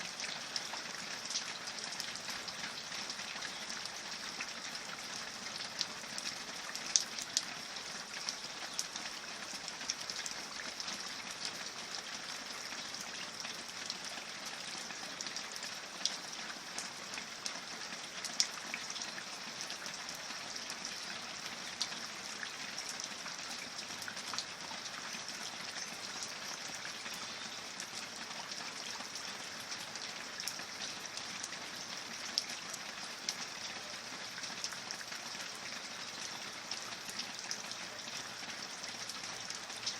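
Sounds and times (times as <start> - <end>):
steady rain hiss: 0.0 - 39.9
raindrops ticking: 0.2 - 19.3.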